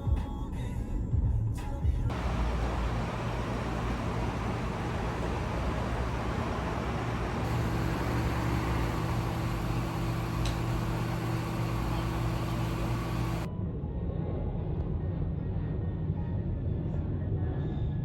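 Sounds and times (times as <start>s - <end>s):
moving vehicle rumble: 2.1s - 13.5s.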